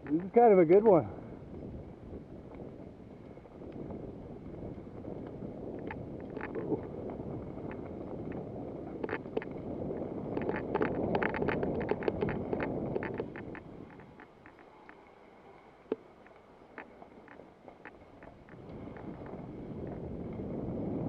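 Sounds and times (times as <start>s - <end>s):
wind on microphone: 0.0s - 21.0s
sharp clicks and rattles: 5.7s - 6.9s, 7.6s - 9.6s, 10.3s - 15.0s.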